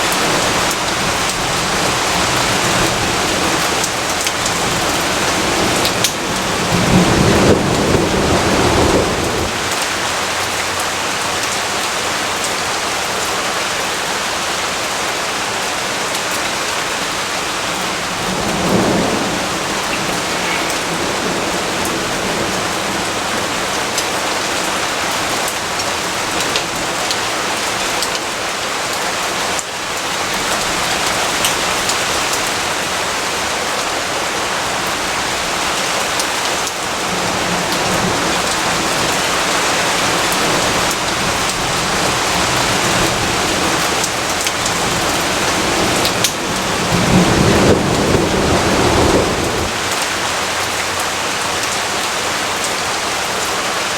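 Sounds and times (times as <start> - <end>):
steady rain hiss: 0.0 - 53.9
low thunder rumbles: 0.2 - 10.1, 17.3 - 24.5, 36.9 - 50.1.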